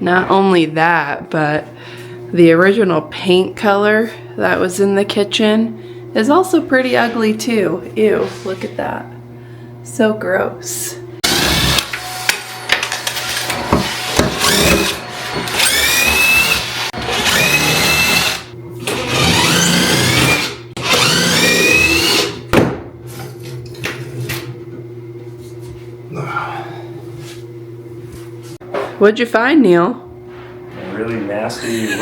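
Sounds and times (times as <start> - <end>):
power drill whining: 11.2 - 22.4.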